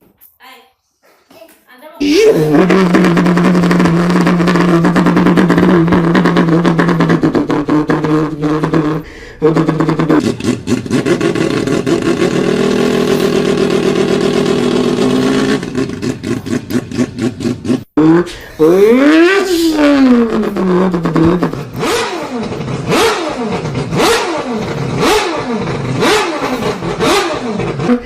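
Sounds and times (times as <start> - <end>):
toy engine sound effect: 18.0 - 22.4.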